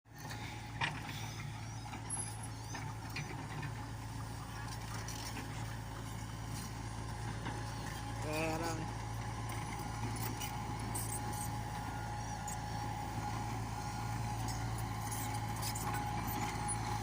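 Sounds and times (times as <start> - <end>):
excavator diesel engine running: 0.1 - 17.0.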